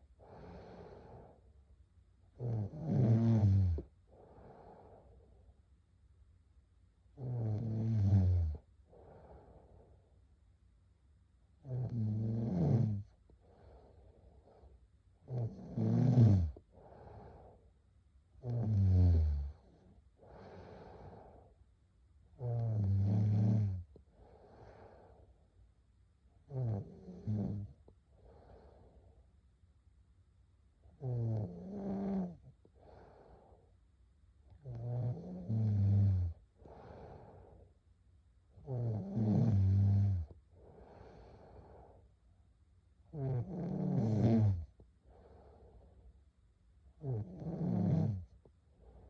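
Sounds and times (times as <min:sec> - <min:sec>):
person snoring: 0:02.4 - 0:04.8, 0:07.2 - 0:08.6, 0:11.6 - 0:13.1, 0:15.3 - 0:17.4, 0:18.4 - 0:21.4, 0:22.4 - 0:23.8, 0:26.5 - 0:27.7, 0:31.0 - 0:33.5, 0:34.6 - 0:37.4, 0:38.6 - 0:41.9, 0:43.1 - 0:44.7, 0:47.0 - 0:48.3.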